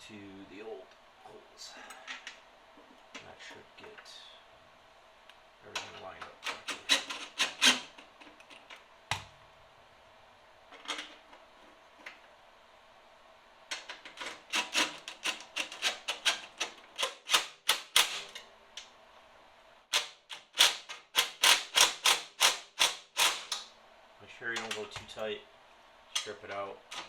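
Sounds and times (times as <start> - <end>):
socket ratchet clicking: 6.4 - 7.9, 14.2 - 18.3, 19.9 - 23.7.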